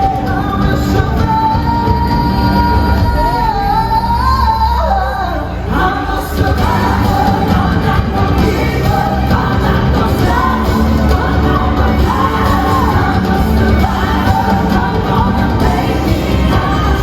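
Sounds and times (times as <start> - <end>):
person singing: 0.0 - 17.0
pop music over sound system: 0.0 - 17.0
steady bass beat: 6.4 - 17.0.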